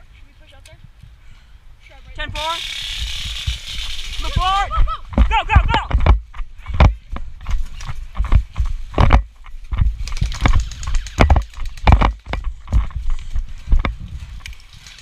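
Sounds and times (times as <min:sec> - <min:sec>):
running footsteps on rough ground: 0:03.2 - 0:15.0.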